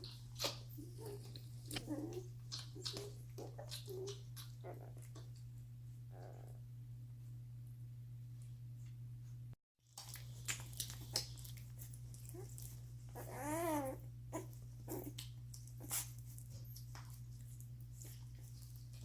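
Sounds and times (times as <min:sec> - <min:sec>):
puppies rustling and clicking: 0:00.0 - 0:05.7, 0:09.9 - 0:19.0
puppy whimpering cry: 0:13.1 - 0:15.1.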